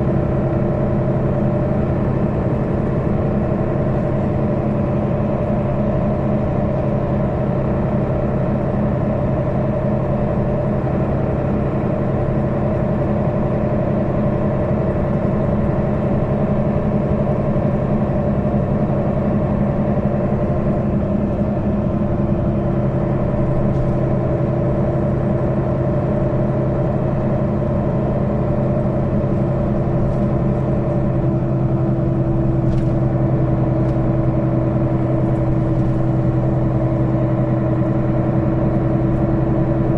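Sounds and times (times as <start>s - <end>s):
bus diesel engine drone: 0.0s - 39.9s.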